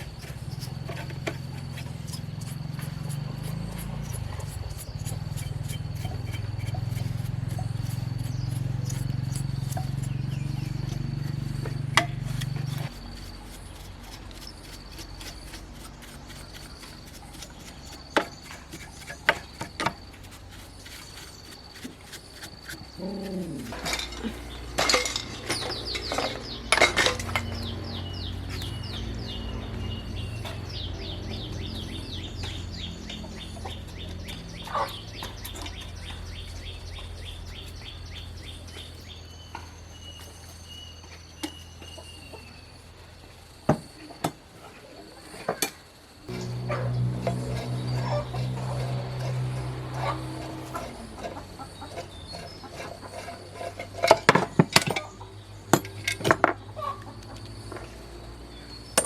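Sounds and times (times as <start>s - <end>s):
metal tools clinking: 23.7s - 27.6s, 55.8s - 56.6s.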